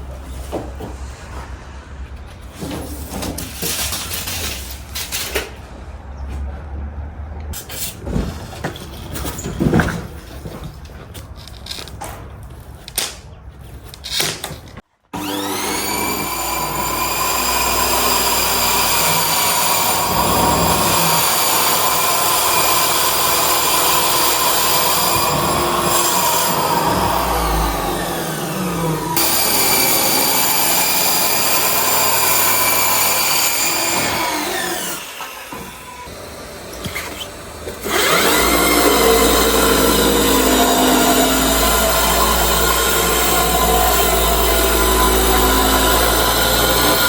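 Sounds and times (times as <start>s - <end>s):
knocks and clatter: 7.7s - 14.8s
motor whining: 15.2s - 47.0s.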